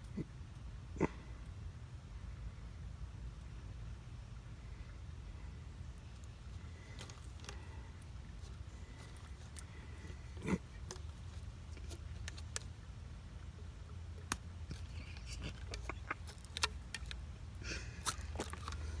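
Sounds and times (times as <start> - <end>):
steady low hum: 0.0 - 19.0
plastic pipe fittings clicking: 6.2 - 7.7, 8.4 - 12.7, 14.2 - 17.3, 18.0 - 19.0.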